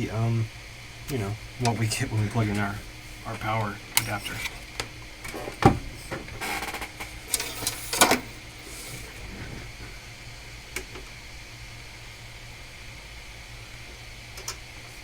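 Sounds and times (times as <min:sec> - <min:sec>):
steady low hum: 0:00.0 - 0:15.0
power cable rattling: 0:01.4 - 0:09.7.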